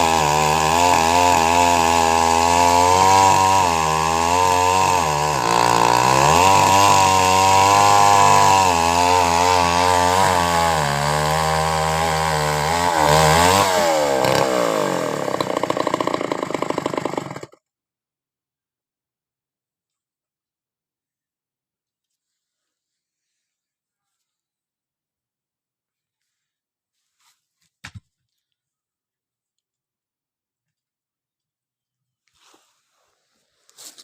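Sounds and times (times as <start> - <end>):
chainsaw engine cutting wood: 0.0 - 17.6.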